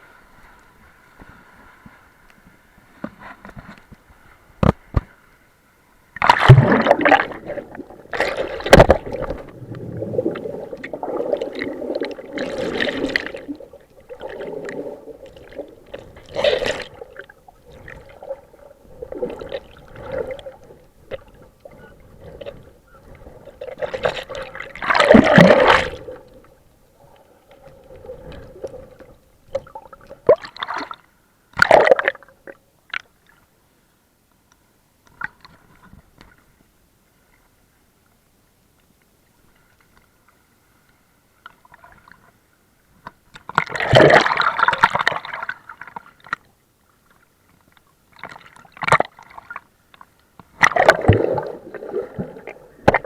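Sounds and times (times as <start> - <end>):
underwater gurgling and sloshing: 0.0 - 33.8, 34.6 - 53.0
sharp knocks underwater: 6.2 - 7.5, 8.1 - 10.9, 50.6 - 53.0.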